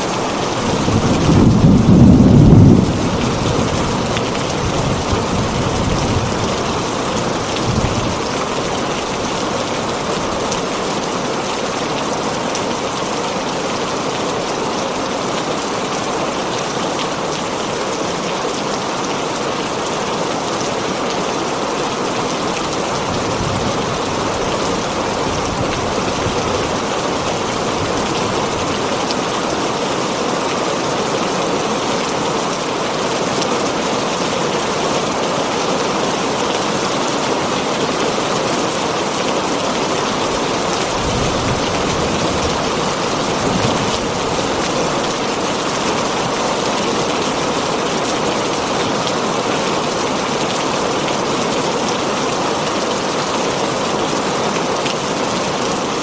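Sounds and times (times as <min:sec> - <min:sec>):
heavy rain on a tin roof: 0:00.0 - 0:56.0
low rumble of thunder: 0:00.6 - 0:08.3.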